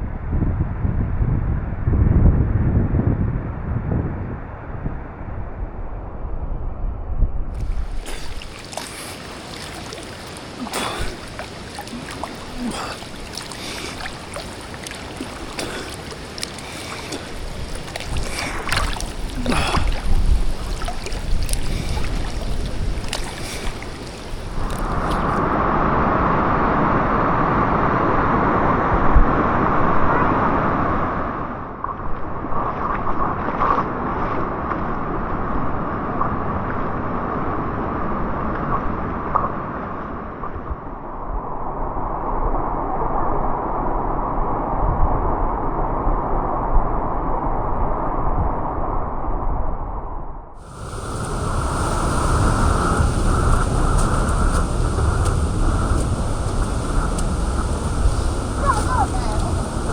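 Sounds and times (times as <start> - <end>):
knocks and splashes: 7.6 - 25.5, 50.6 - 59.9
stream water running: 7.6 - 25.6, 50.6 - 59.9.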